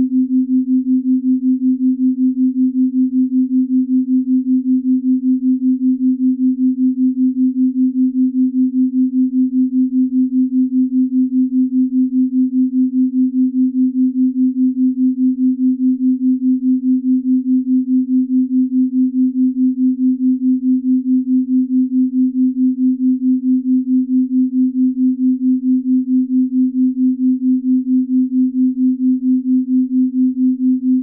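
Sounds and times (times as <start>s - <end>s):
pulsing low sine tone: 0.0s - 31.0s.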